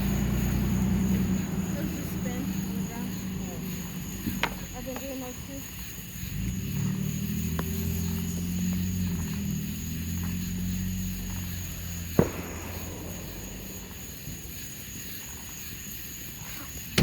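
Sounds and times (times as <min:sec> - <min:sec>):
low engine hum: 0:00.0 - 0:17.0
sharp pop: 0:12.2 - 0:13.6.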